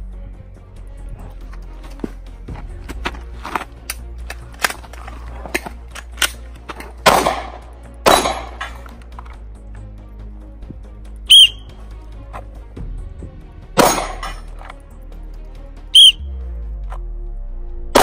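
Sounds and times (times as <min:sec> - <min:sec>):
background music: 0:00.0 - 0:18.0
loud handgun shots: 0:07.1 - 0:08.6.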